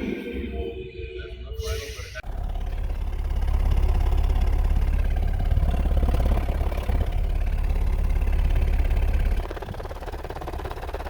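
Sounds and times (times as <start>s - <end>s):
car engine idling roughly: 2.2s - 11.0s.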